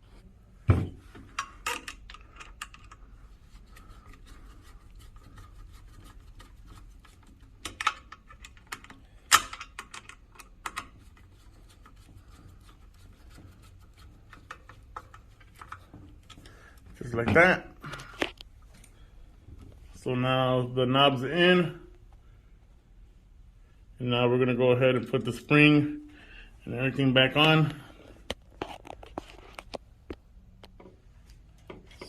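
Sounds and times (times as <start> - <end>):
clicks and knocks of bolt fitting: 7.6 - 11.0.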